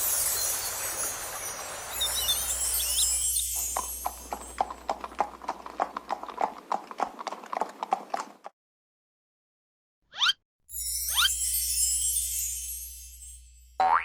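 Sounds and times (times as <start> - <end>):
cartoon hoofbeats clip-clop: 2.1 - 8.5.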